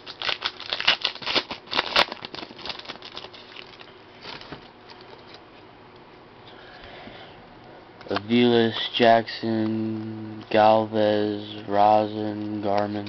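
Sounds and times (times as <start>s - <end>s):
trading cards clicking and rustling: 11.5s - 13.0s.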